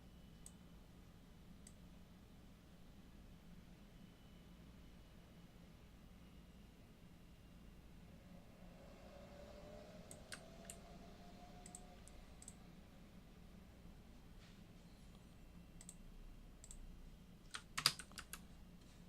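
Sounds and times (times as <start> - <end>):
computer mouse clicks: 0.4 - 0.6, 10.1 - 10.8, 11.6 - 12.6, 15.8 - 16.0, 16.6 - 16.8, 17.5 - 18.5.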